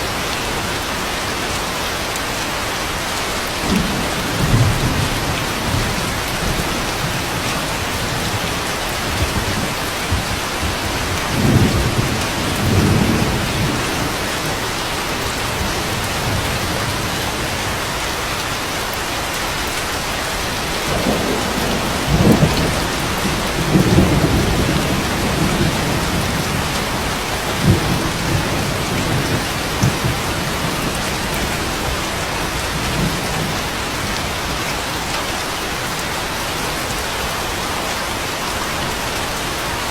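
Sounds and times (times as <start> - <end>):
steady rain: 0.0 - 39.9
thunder rumbling: 3.6 - 17.8, 20.6 - 34.7.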